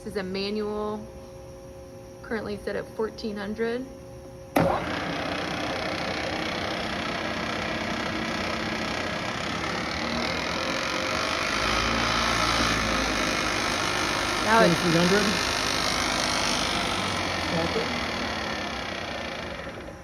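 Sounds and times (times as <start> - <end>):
milling machine spindle running: 4.6 - 20.0.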